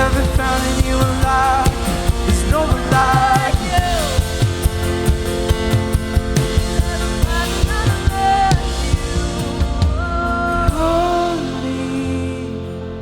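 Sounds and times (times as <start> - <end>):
drum kit beat: 0.0 - 12.0
live band playing: 0.0 - 12.3.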